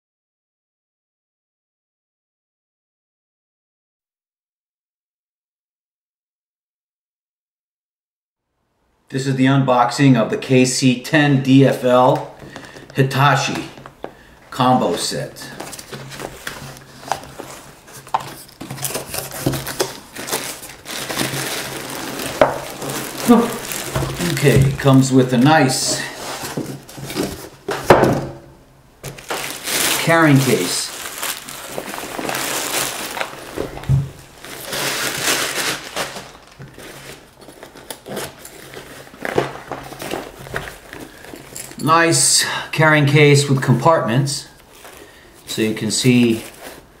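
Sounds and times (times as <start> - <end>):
packaging rustling and crinkling: 11.7 - 28.0, 29.0 - 41.9, 44.4 - 47.0
packaging clicks and knocks: 15.6 - 25.0, 29.0 - 30.0, 31.0 - 41.8.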